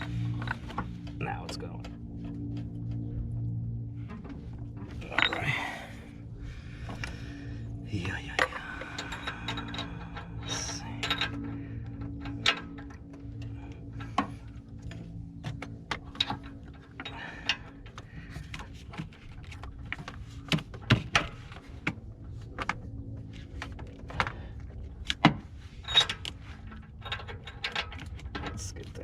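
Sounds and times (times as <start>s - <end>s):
faint steady hum: 0.0s - 29.0s
metal tools clicking and knocking: 5.0s - 5.7s, 8.0s - 21.6s, 25.0s - 29.0s.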